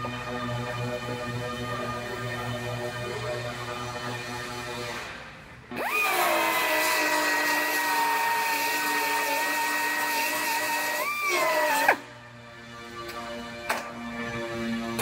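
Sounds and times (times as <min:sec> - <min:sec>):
power tool whining: 0:05.7 - 0:12.1.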